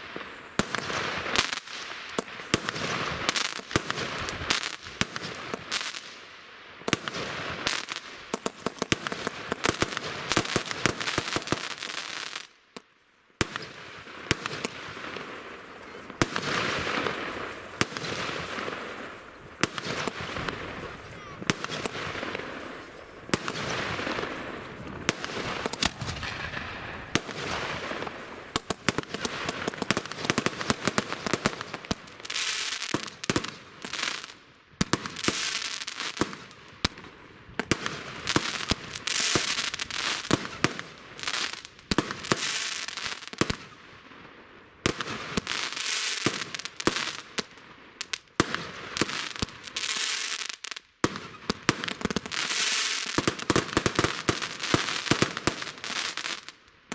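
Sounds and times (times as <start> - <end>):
fireworks bangs: 0.0 - 6.0, 13.4 - 43.7
fireworks hissing crackle: 0.0 - 12.6, 13.4 - 36.5, 37.7 - 43.5, 44.9 - 56.6.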